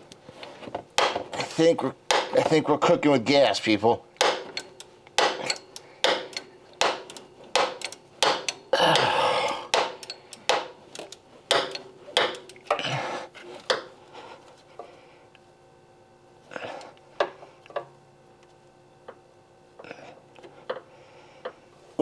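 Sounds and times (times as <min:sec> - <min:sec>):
ratchet clicking: 0:04.2 - 0:08.7, 0:09.7 - 0:12.7
ratchet rasping: 0:04.2 - 0:12.7.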